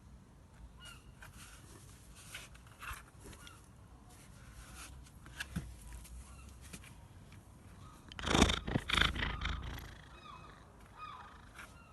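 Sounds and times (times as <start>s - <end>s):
loud snore: 8.2s - 10.1s.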